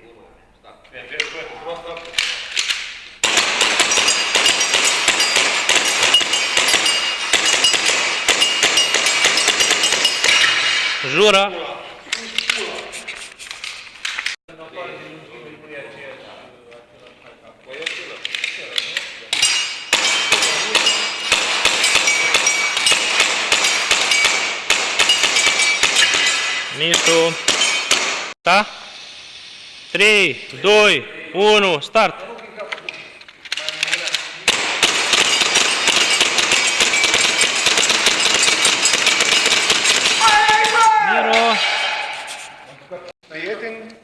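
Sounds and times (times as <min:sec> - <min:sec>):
pellets clanging on metal targets: 0:02.2 - 0:11.4, 0:18.0 - 0:28.3, 0:33.8 - 0:42.5
airsoft pistol shots: 0:03.2 - 0:11.0, 0:19.9 - 0:28.4, 0:34.5 - 0:40.8
metallic pings of bbs on steel: 0:03.8 - 0:10.6, 0:19.4 - 0:27.9, 0:35.1 - 0:40.0.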